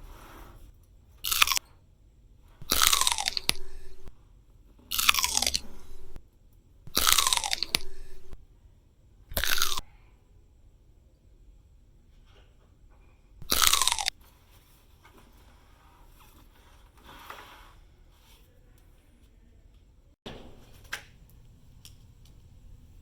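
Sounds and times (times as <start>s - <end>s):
crunching bursts: 1.2s - 1.6s, 2.6s - 4.2s, 4.9s - 6.2s, 6.9s - 8.4s, 9.3s - 9.9s, 13.4s - 14.2s.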